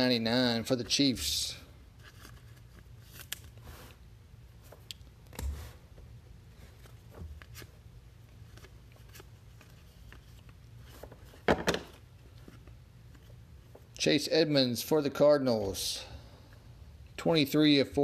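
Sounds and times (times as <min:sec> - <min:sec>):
trading cards being handled: 0:01.9 - 0:03.8, 0:06.5 - 0:14.0.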